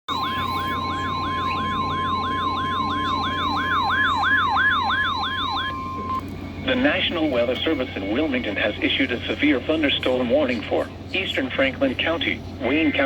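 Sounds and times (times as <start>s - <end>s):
electronic siren sweeping upward: 0.1s - 6.3s
steady alarm tone: 0.1s - 7.2s.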